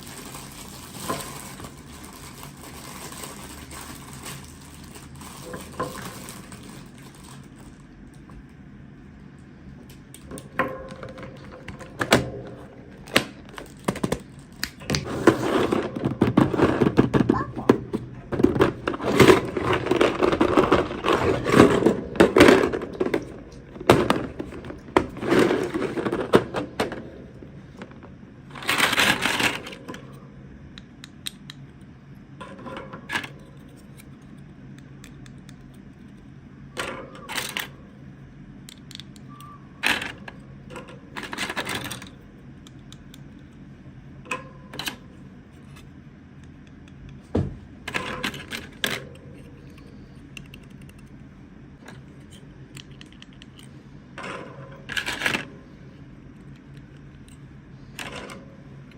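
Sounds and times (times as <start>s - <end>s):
plastic packaging crinkling: 0.0s - 8.3s, 12.9s - 17.0s, 18.3s - 26.8s
plastic pieces clicking and tapping: 30.7s - 31.9s, 47.9s - 51.2s, 51.8s - 53.7s.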